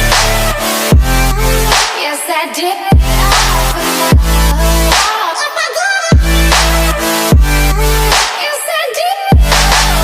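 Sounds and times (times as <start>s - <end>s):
dubstep music: 0.0s - 10.0s.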